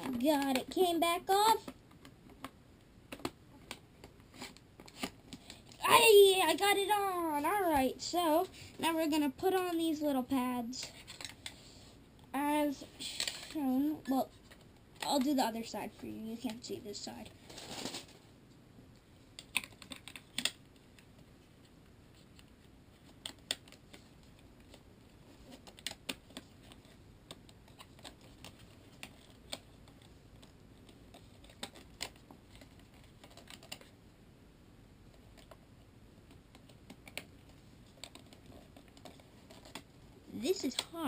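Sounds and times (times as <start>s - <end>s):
plastic parts clicking and tapping: 1.6s - 5.7s, 19.3s - 21.2s.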